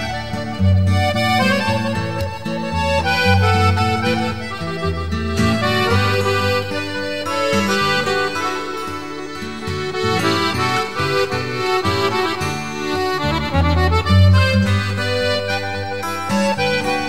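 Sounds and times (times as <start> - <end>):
instrumental music: 0.0 - 17.0.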